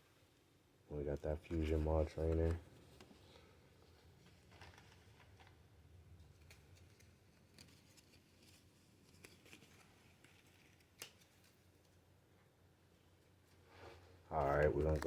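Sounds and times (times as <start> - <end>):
trading cards clicking and rustling: 1.5 - 11.6, 14.5 - 15.0.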